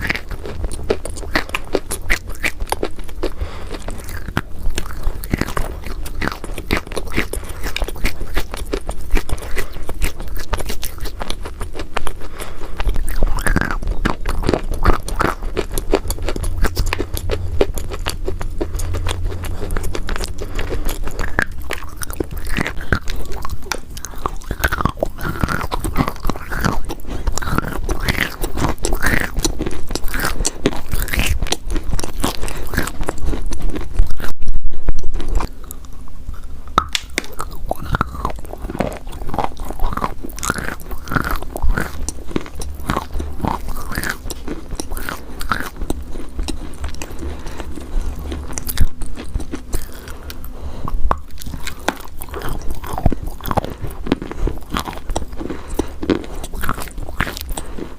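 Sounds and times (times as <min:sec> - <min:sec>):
chewing crunchy chalk: 0:00.0 - 0:57.9.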